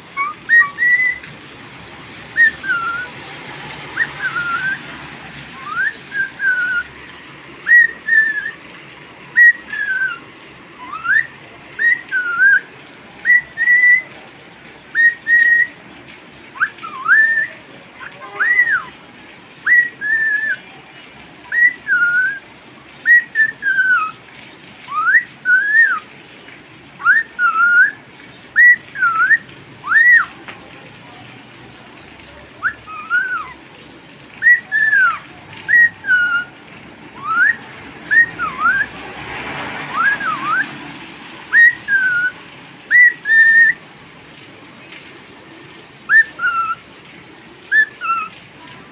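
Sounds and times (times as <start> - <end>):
cockatiel whistling: 0.2 - 1.2, 2.4 - 3.1, 4.0 - 4.8, 5.6 - 6.9, 7.7 - 8.6, 9.4 - 10.2, 10.8 - 14.1, 15.0 - 15.7, 16.6 - 18.9, 19.6 - 20.6, 21.5 - 22.4, 23.1 - 24.2, 24.9 - 26.0, 27.0 - 28.0, 28.6 - 30.3, 32.6 - 33.6, 34.4 - 36.5, 37.2 - 38.9, 39.9 - 40.7, 41.5 - 43.8, 46.1 - 46.8, 47.7 - 48.3.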